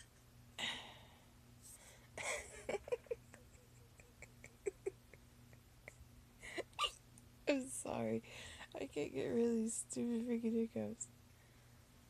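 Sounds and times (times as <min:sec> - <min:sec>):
woman hiccuping: 0:06.6 - 0:07.0.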